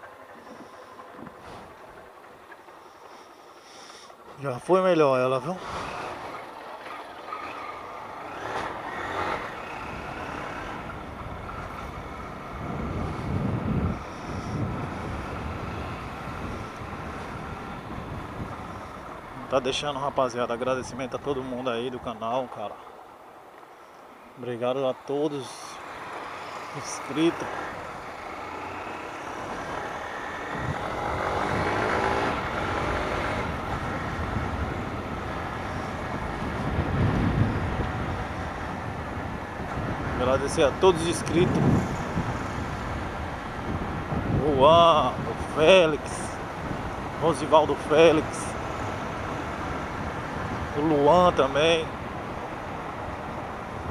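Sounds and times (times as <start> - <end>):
wind rushing over microphone: 8.3 - 22.2, 26.2 - 53.9.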